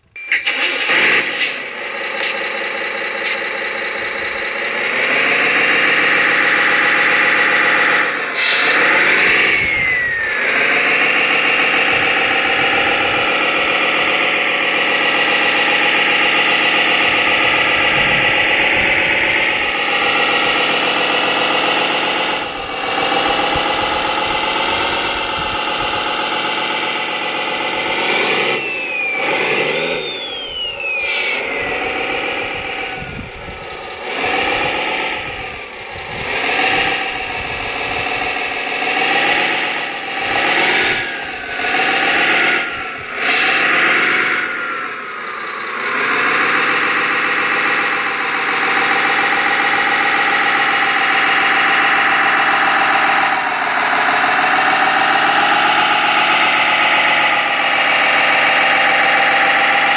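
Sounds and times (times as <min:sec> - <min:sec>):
high whine falling in pitch: 0:00.0 - 0:45.0
model vehicle engine running: 0:00.0 - 0:59.9.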